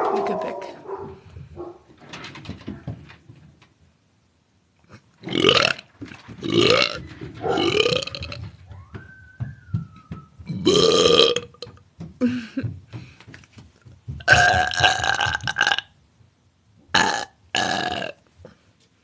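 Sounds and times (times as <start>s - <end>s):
woman burping: 0.0s - 0.8s, 14.3s - 15.9s, 17.0s - 18.2s.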